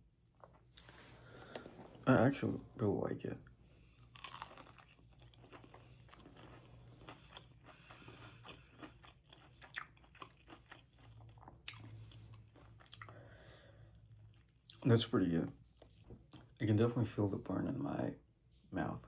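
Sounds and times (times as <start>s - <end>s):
chewing crispy fried chicken: 3.8s - 16.6s.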